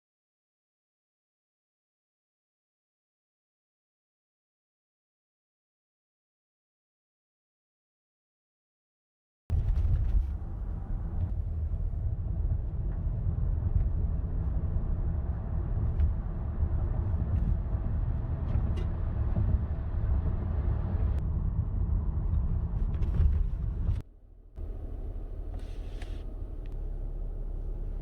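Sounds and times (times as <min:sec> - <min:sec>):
engine and road noise: 0:09.5 - 0:28.0.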